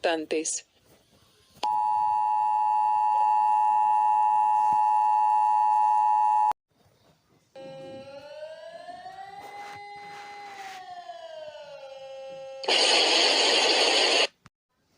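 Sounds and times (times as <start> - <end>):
two-tone alarm: 1.6 - 6.6, 7.6 - 13.7
siren wail rising: 7.6 - 13.1.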